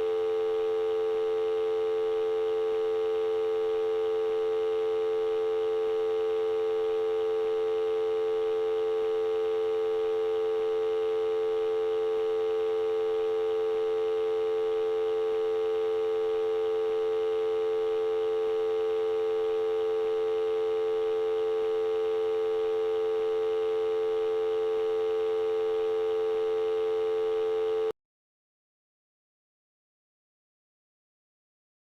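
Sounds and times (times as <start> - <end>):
telephone dial tone: 0.0 - 27.9.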